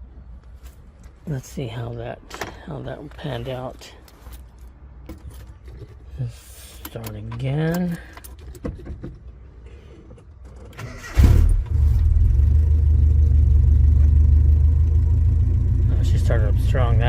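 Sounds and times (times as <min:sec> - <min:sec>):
engine idling: 0:11.1 - 0:17.0.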